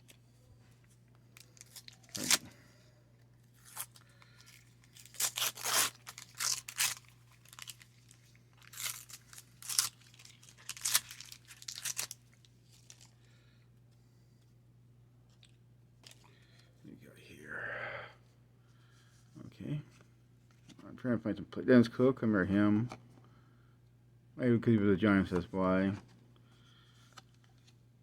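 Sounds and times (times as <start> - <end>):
wax paper wrapper tearing: 1.4 - 2.5, 3.6 - 13.1.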